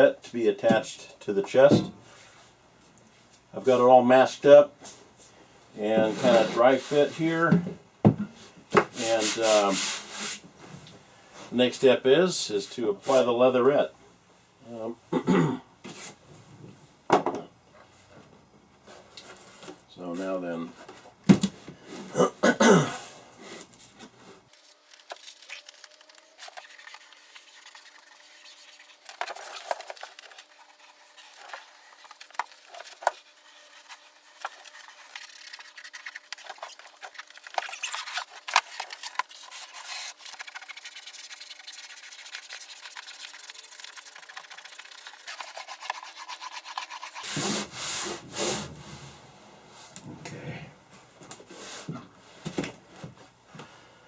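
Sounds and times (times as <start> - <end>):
hand rubbing leatherette on wood: 5.9 - 7.4, 8.9 - 10.4, 39.4 - 51.9.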